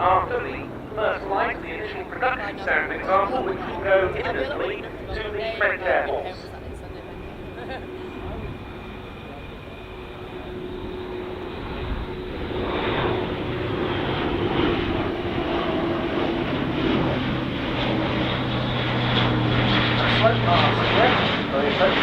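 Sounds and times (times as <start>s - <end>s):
propeller aircraft flying by: 0.0s - 22.0s.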